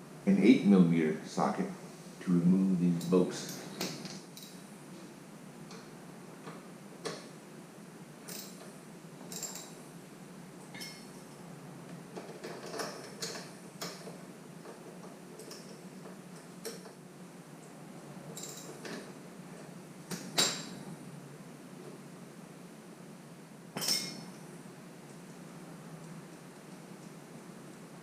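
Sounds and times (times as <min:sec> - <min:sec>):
metal tools clinking: 0:08.3 - 0:08.6, 0:09.3 - 0:09.8, 0:10.7 - 0:11.2, 0:18.4 - 0:19.0, 0:23.8 - 0:24.4.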